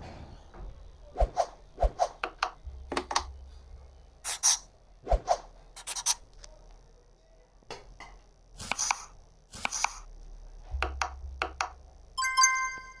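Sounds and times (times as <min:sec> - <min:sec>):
bright ringing ping: 0:12.2 - 0:13.0.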